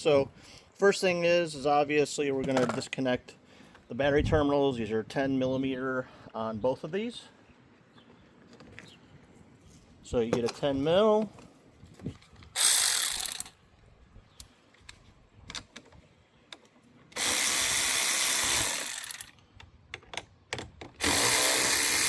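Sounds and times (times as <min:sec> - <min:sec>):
tool and terminals clicking: 0:12.2 - 0:13.6, 0:14.4 - 0:22.0
power ratchet spinning socket: 0:12.6 - 0:13.6, 0:17.1 - 0:19.4, 0:21.0 - 0:22.0.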